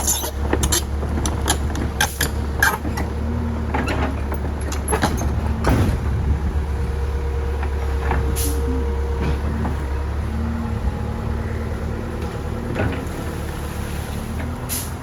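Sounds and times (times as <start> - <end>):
metal clanks and knocks: 0.0 - 6.5, 7.6 - 9.8
heavy machinery engine rumbling: 0.0 - 15.0.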